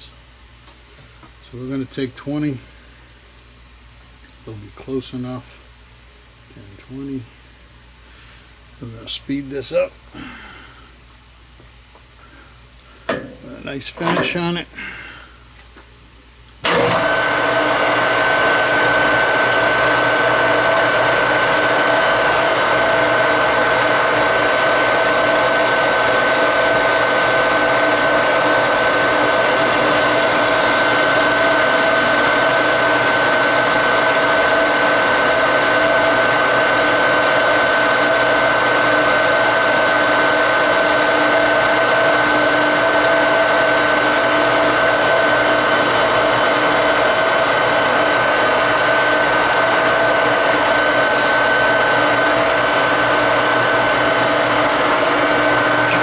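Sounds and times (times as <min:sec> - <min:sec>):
machine tool gear whine: 0:17.9 - 0:56.0.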